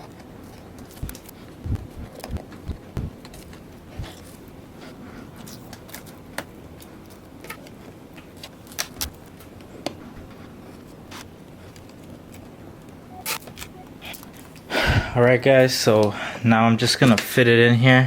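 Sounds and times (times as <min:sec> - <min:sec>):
steady low hum: 0:00.0 - 0:15.6
hands clicking and tapping on battery: 0:00.9 - 0:04.1.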